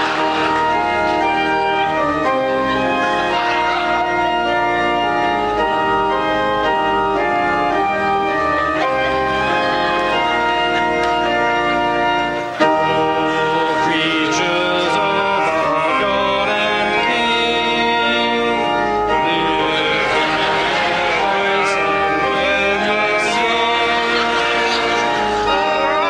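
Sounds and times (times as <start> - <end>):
voices singing: 0.0 - 2.1, 2.8 - 5.1, 12.6 - 26.0
organ playing held chords: 0.0 - 26.0.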